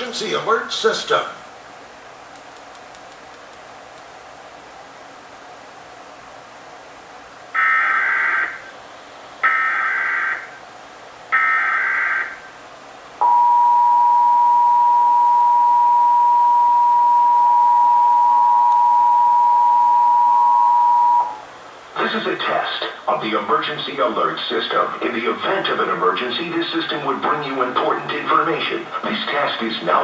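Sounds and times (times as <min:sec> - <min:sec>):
two-tone attention signal: 0:13.2 - 0:21.4
warbling data tone bursts: 0:13.2 - 0:21.5.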